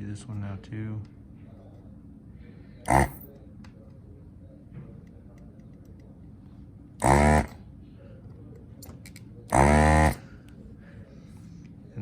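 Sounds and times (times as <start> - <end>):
desoldering vacuum pump buzzing: 2.9 - 3.3, 7.0 - 7.6, 9.5 - 10.3.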